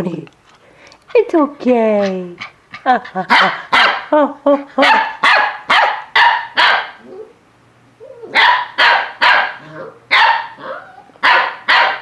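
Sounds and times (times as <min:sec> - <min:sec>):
dog barking: 0:03.3 - 0:04.1, 0:04.8 - 0:07.1, 0:08.3 - 0:12.0.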